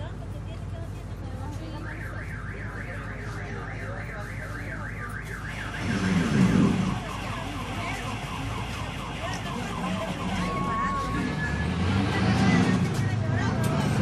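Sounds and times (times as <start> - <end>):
bus engine humming: 0.0 - 14.0
warbling electronic alarm tone: 4.3 - 11.8.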